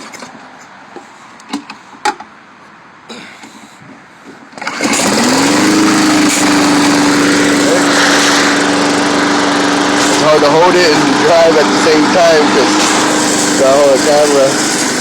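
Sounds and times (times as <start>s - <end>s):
lawn mower engine starting: 4.5s - 15.0s.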